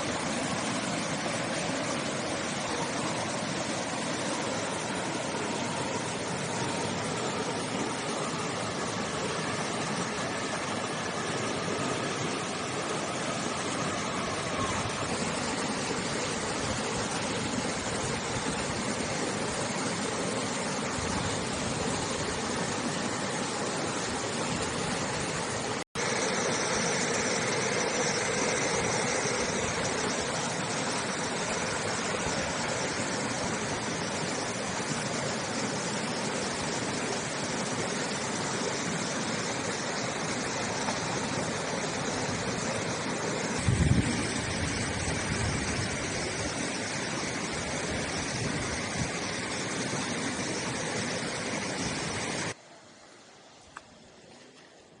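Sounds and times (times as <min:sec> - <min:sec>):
river water flowing: 0:00.0 - 0:55.0.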